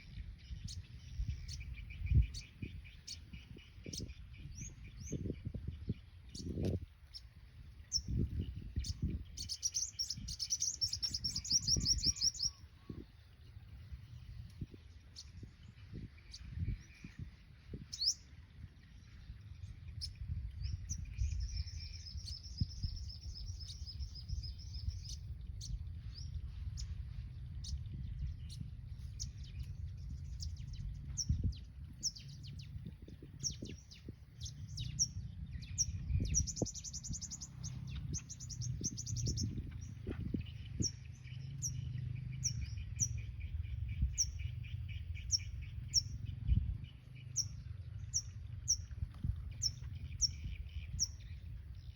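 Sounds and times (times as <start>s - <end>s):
sunbirds chipping: 0.0s - 51.9s
low rumble: 13.4s - 51.9s.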